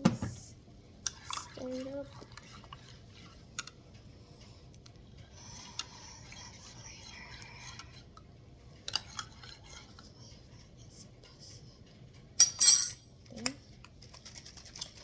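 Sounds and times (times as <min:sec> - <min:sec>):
spoon clinking in mug: 0:12.4 - 0:13.0.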